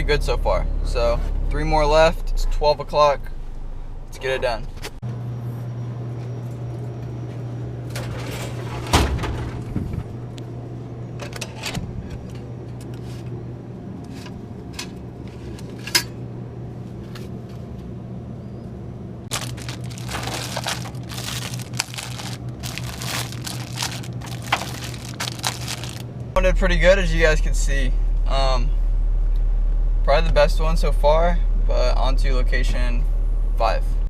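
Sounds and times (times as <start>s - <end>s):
car cabin hum: 19.2s - 32.9s.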